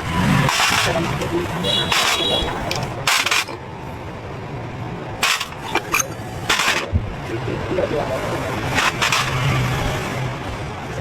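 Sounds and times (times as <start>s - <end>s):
metal tools clinking: 8.8s - 9.5s.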